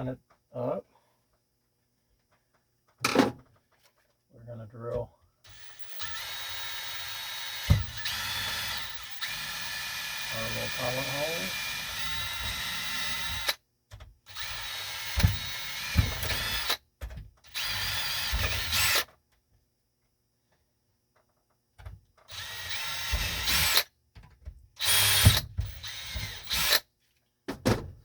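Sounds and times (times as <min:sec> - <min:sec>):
power drill drilling into plastic: 0:05.5 - 0:13.6, 0:14.3 - 0:16.8, 0:17.5 - 0:19.1, 0:22.3 - 0:23.9, 0:24.8 - 0:26.8.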